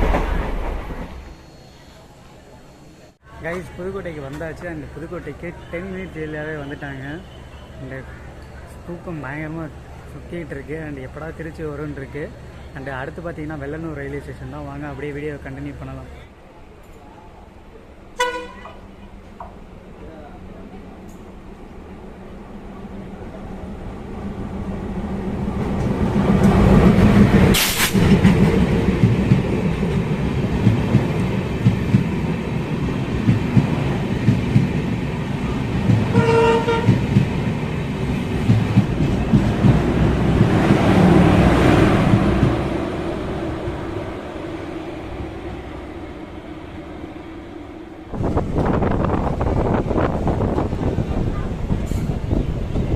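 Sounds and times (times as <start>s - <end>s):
train rumble and wheel clatter: 0.0s - 2.5s, 3.2s - 52.9s
train horn note: 18.2s - 18.8s, 36.1s - 37.0s
sharp crack: 27.5s - 28.7s.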